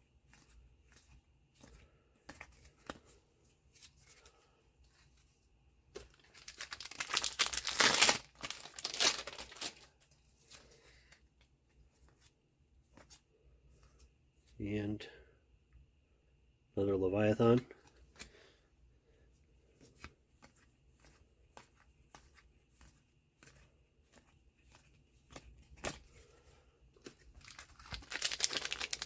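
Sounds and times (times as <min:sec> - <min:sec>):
wrapper tearing and crinkling: 0:06.1 - 0:10.0, 0:27.4 - 0:29.0.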